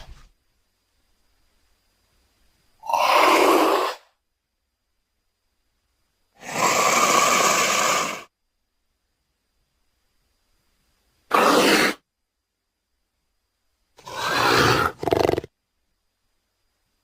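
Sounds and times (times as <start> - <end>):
breathy creature calls: 6.4 - 8.3.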